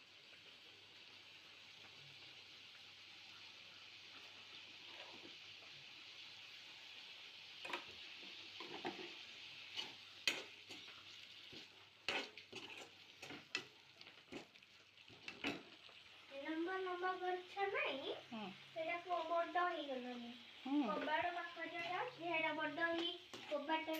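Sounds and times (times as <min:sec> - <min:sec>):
food sizzling in hot oil: 0:00.0 - 0:23.9
spatula scraping a pan: 0:04.8 - 0:05.4, 0:07.6 - 0:15.9, 0:21.6 - 0:22.2, 0:22.9 - 0:23.9.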